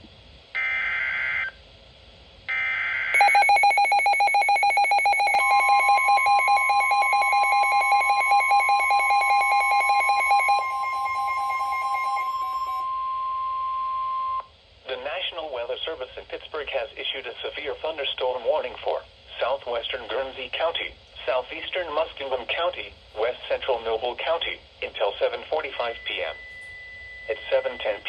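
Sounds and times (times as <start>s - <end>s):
screeching digital header tones: 2.5s - 13.2s
rapid pulsing electronic alarm: 2.5s - 14.4s, 25.7s - 28.0s
steady single-pitch warning tone: 2.5s - 14.5s, 25.6s - 28.0s.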